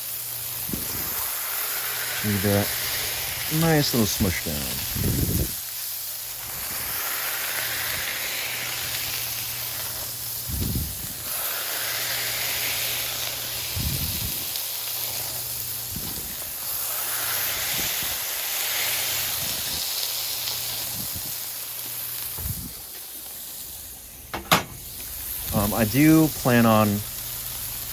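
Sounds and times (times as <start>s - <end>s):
burger patties sizzling on griddle: 0.0s - 27.9s
burger press thuds: 24.3s - 24.8s.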